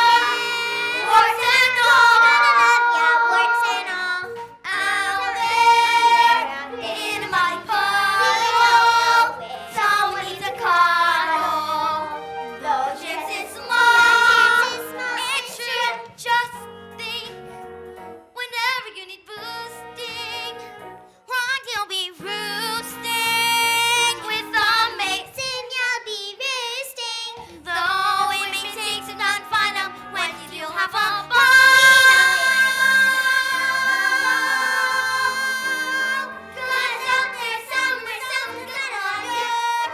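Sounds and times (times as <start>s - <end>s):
person singing with vibrato: 0.0s - 15.1s, 30.5s - 39.9s
backing music: 0.0s - 18.3s, 27.6s - 39.9s.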